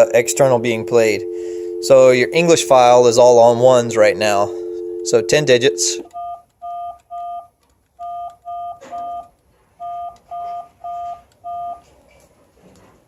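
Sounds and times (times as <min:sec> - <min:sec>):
touch-tone keypad beeps: 0:04.7 - 0:11.8.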